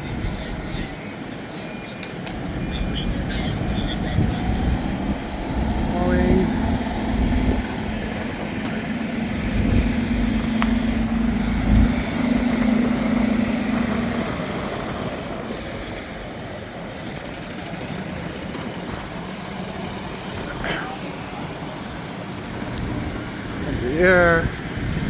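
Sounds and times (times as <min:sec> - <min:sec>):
engine humming: 0:00.0 - 0:25.0
outdoor noise: 0:00.0 - 0:25.0.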